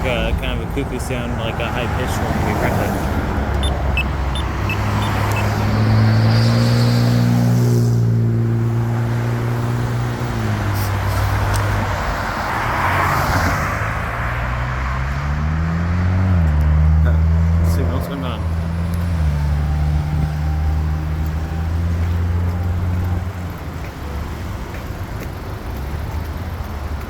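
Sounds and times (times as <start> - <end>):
vehicle engines idling: 0.0 - 6.4, 7.8 - 13.1, 13.7 - 27.0
tyre and road noise: 0.0 - 27.0
engine revving up: 1.4 - 11.9, 12.7 - 23.4.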